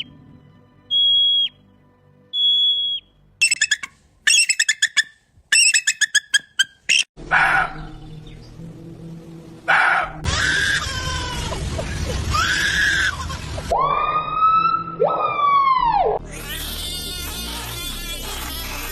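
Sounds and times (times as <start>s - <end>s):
animal calls: 3.4s - 7.9s.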